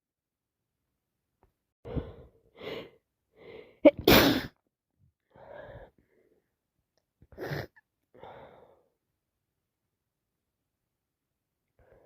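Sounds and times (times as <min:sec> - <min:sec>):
woman sneezing: 0:03.9 - 0:04.6.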